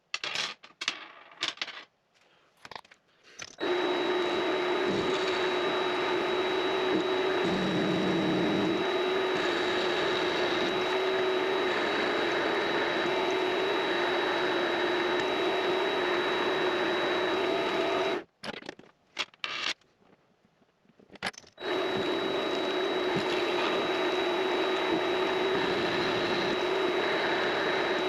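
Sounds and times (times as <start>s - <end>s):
lathe motor humming and whining: 3.6s - 18.2s, 21.6s - 28.0s.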